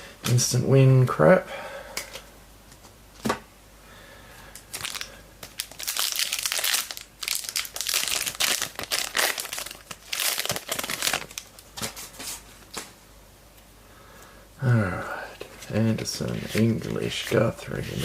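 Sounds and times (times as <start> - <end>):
foil wrapper crinkling: 4.6 - 12.4.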